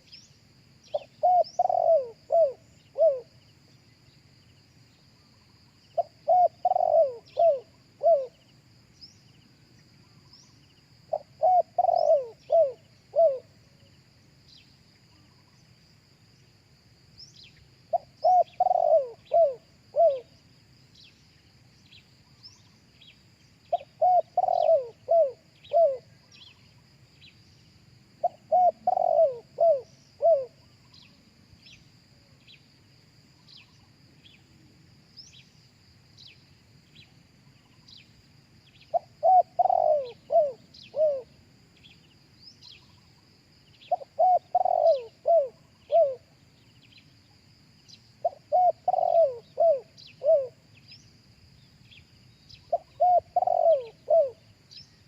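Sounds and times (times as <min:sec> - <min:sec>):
dove cooing: 0:00.9 - 0:03.3, 0:06.0 - 0:08.4, 0:11.1 - 0:13.6, 0:17.9 - 0:20.4, 0:23.7 - 0:26.2, 0:28.2 - 0:30.7, 0:38.9 - 0:41.4, 0:43.9 - 0:46.4, 0:48.2 - 0:50.6, 0:52.7 - 0:54.4.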